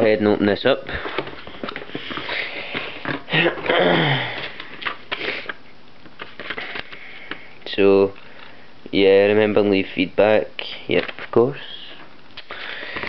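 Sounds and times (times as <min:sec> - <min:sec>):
packaging rustling and scraping: 0:00.8 - 0:07.6, 0:10.9 - 0:13.0.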